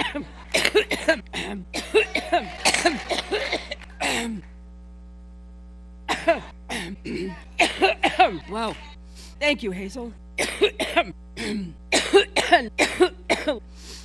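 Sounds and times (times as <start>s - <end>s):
woman coughing: 0.0s - 4.4s, 6.1s - 8.6s, 10.4s - 13.6s
electrical hum: 0.0s - 14.0s.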